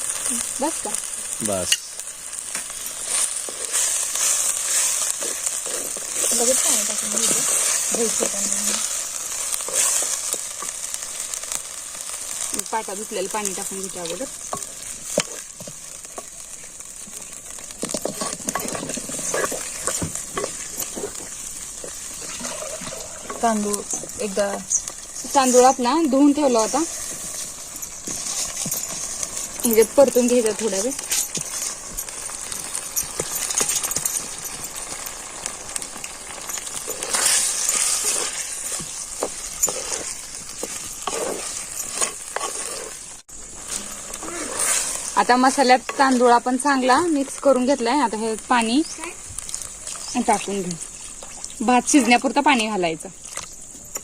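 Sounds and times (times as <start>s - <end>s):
paste sizzling in a hot pan: 0.0s - 54.0s
metal spoon scraping a pan: 1.7s - 11.0s, 12.8s - 47.8s.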